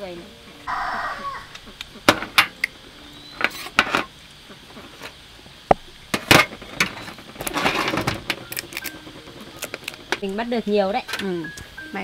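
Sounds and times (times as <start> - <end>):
hard objects clicking and knocking: 3.4 - 10.2.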